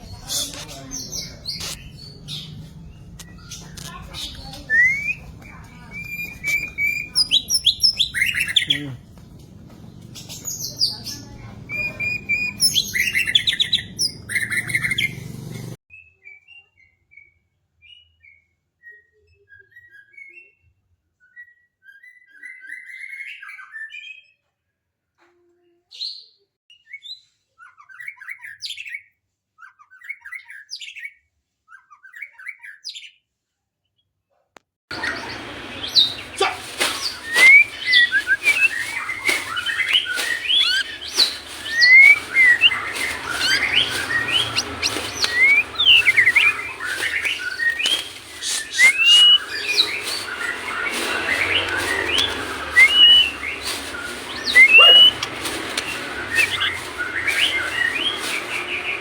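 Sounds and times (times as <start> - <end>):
bird singing whistles and trills: 1.0 - 8.9, 10.2 - 15.2, 35.0 - 59.0.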